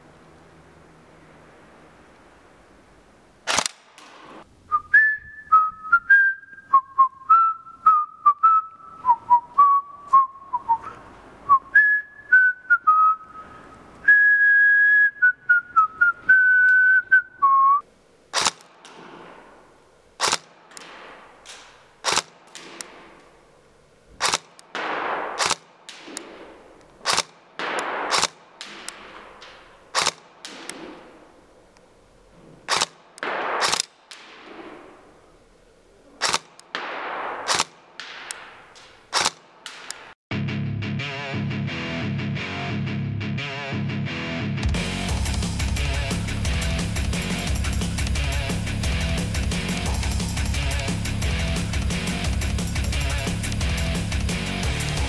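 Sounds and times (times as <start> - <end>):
airsoft gun shots: 3.4 - 4.4, 18.3 - 23.4, 24.2 - 31.4, 32.6 - 35.1, 36.2 - 40.2
person whistling a tune: 4.7 - 17.8.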